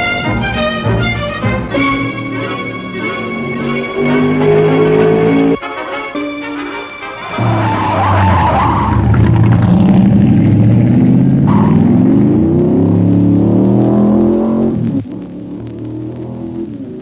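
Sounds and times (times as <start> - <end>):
racing car engine revving: 0.0 - 5.6, 7.2 - 17.0
background music: 0.0 - 9.1
tyre squeal: 7.2 - 9.6.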